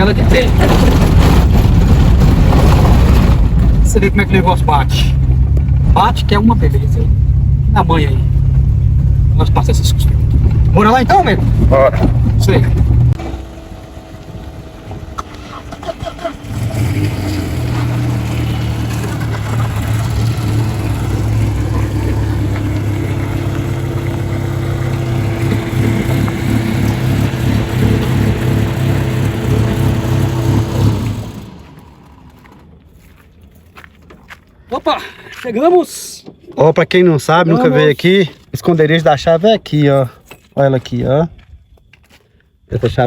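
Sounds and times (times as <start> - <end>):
car engine running: 0.0 - 33.2.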